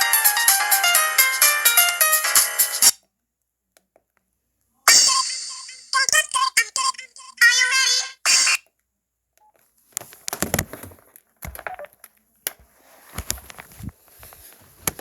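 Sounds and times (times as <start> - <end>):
phone being handled clicks: 9.4 - 13.9.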